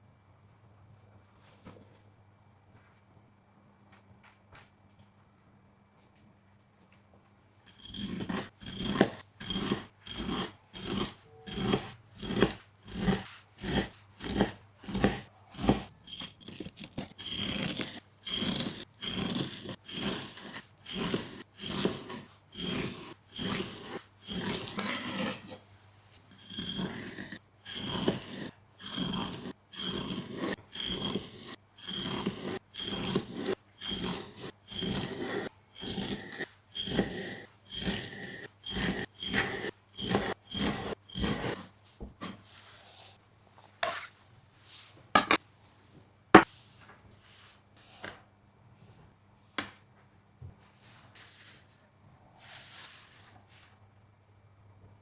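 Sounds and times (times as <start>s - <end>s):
rhythmic rasping scraping strokes: 7.8s - 16.2s, 26.3s - 41.7s.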